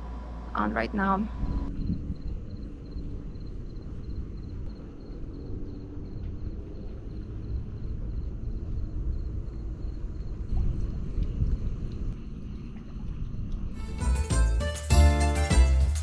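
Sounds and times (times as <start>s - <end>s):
steady low rumble: 0.0s - 14.3s.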